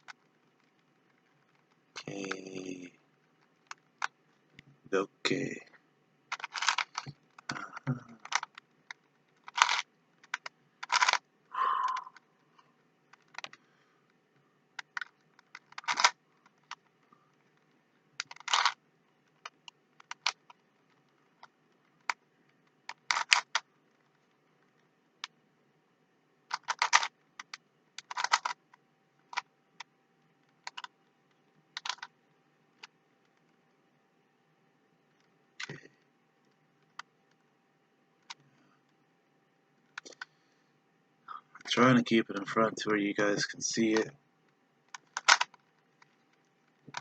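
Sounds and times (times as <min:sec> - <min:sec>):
plastic puzzle cube clicking: 0:00.0 - 0:02.6, 0:03.2 - 0:04.2, 0:06.3 - 0:12.3, 0:13.1 - 0:13.6, 0:14.8 - 0:25.4, 0:26.5 - 0:32.2, 0:44.9 - 0:47.0.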